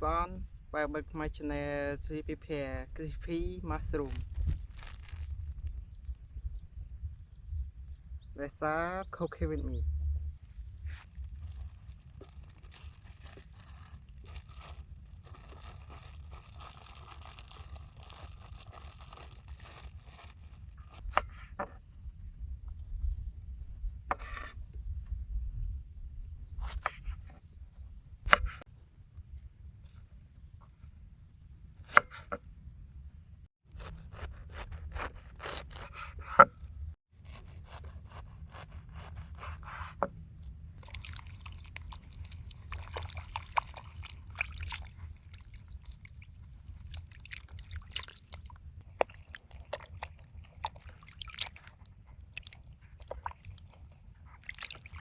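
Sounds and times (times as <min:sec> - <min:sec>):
steady low rumble: 0:09.4 - 0:11.4.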